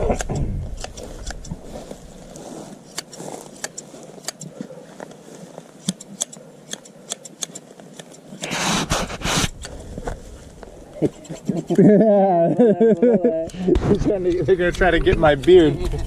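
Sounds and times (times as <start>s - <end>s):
hand shears snipping: 0.0s - 1.6s, 2.8s - 4.6s, 5.8s - 9.8s, 11.0s - 11.8s.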